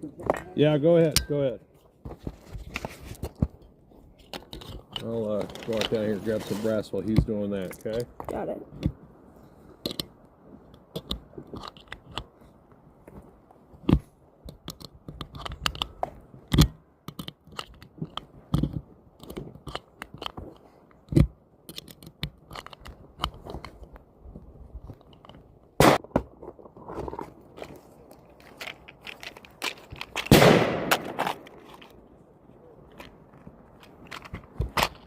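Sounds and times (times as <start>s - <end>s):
cartridge cases clicking: 4.2s - 6.0s, 9.8s - 12.3s, 13.8s - 24.0s
sharp gunshot cracks: 25.8s - 26.0s, 30.3s - 31.4s
crunching footsteps: 27.0s - 32.2s.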